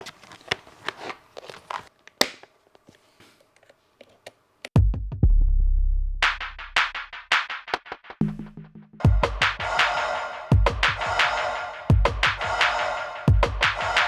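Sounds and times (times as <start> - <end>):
drum machine hits: 4.8 - 5.5, 6.2 - 14.0
deep bass kick dropping in pitch: 4.8 - 6.8
bright hi-hat hits: 8.3 - 14.0.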